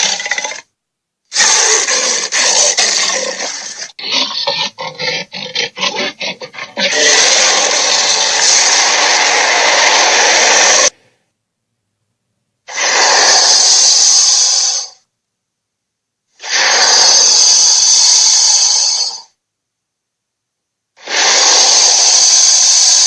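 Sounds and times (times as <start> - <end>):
dinosaur roars: 0.0 - 0.7, 1.4 - 11.0.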